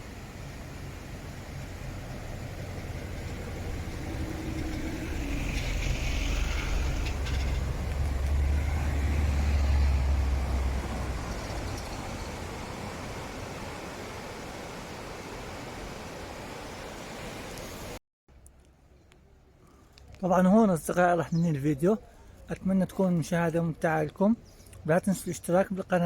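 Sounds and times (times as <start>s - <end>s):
steady rushing hiss: 0.0s - 8.2s
vehicle engine passing by: 2.3s - 12.5s.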